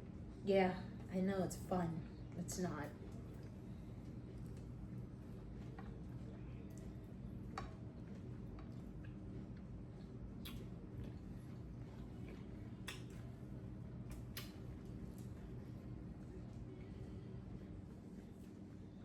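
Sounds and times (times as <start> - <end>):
low steady hum: 0.0 - 19.0
sharp clicks and snaps: 12.8 - 13.2, 14.1 - 14.6.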